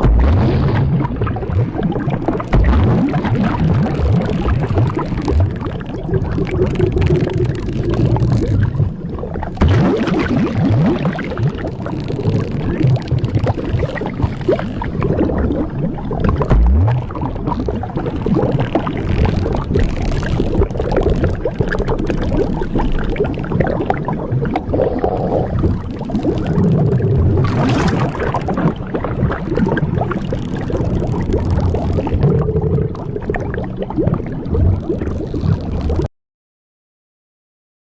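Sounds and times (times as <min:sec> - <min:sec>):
liquid gurgling and sloshing: 0:00.0 - 0:36.1.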